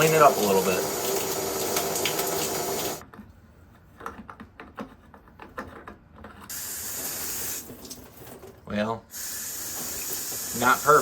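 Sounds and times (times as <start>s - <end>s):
running water hiss: 0.0s - 3.0s, 6.5s - 8.3s, 9.1s - 11.0s.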